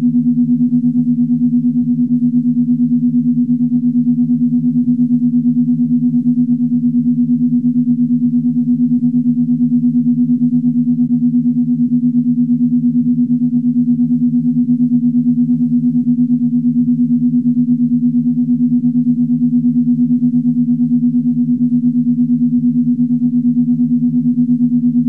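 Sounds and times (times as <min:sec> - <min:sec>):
pulsing low electronic hum: 0:00.0 - 0:25.0.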